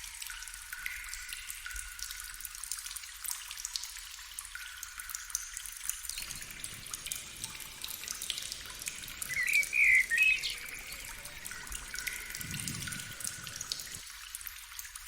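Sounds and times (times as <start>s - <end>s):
water trickling and dripping: 0.0s - 15.0s
short bird call: 9.3s - 11.0s.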